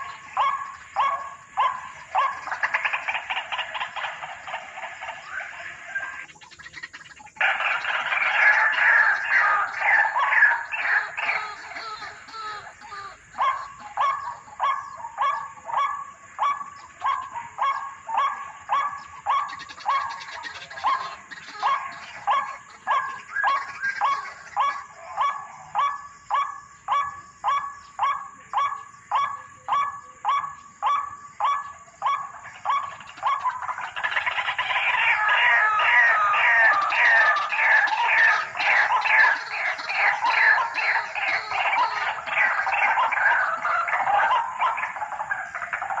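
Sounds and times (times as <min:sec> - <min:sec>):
waterhen calling: 0:00.0 - 0:46.0.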